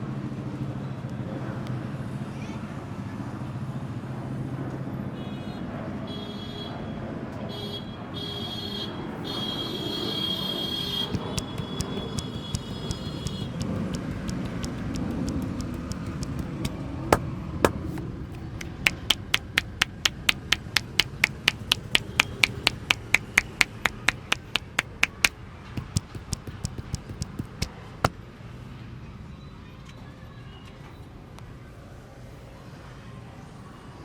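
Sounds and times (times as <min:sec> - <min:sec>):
hand slaps of massage: 0:11.2 - 0:16.7, 0:17.7 - 0:27.7.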